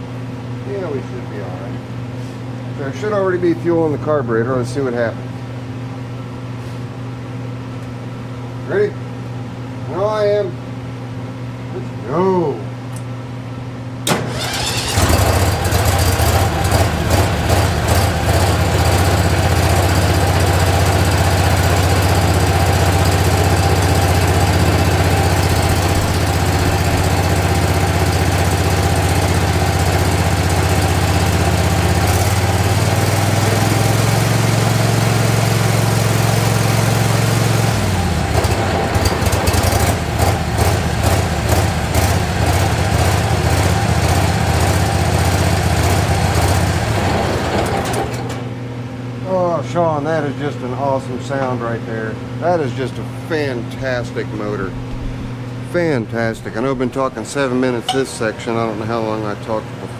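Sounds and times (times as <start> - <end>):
garden tractor engine running: 14.1 - 48.3.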